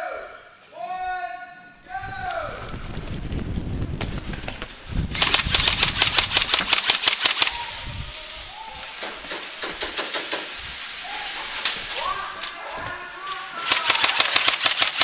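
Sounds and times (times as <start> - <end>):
airsoft gunfire: 5.1 - 7.7, 9.0 - 10.6, 13.7 - 15.0.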